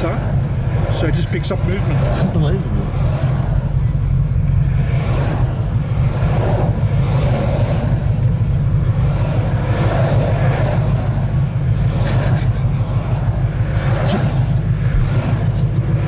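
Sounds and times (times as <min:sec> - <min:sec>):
car engine droning: 0:00.0 - 0:16.0
road noise: 0:00.0 - 0:16.0.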